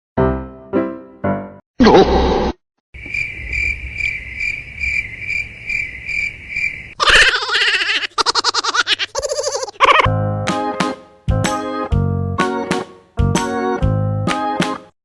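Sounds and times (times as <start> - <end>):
cricket-like chirping trill: 3.0 - 7.0.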